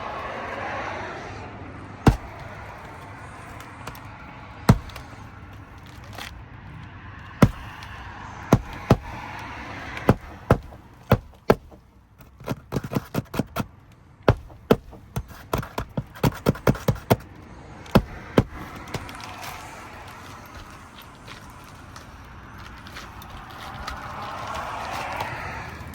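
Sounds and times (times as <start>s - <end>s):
hammer striking nails into shingles: 2.1s - 4.1s, 4.7s - 6.3s, 7.2s - 19.6s.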